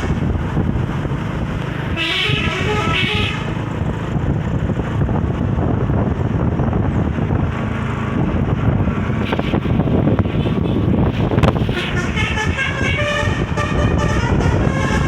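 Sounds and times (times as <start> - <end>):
steady low rumble: 0.0 - 15.0
multi-tone bus horn blasts: 1.8 - 3.9, 10.3 - 15.0.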